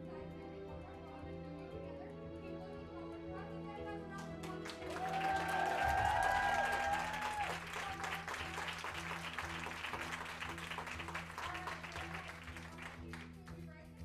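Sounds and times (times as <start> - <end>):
crowd applauding: 4.2 - 13.3.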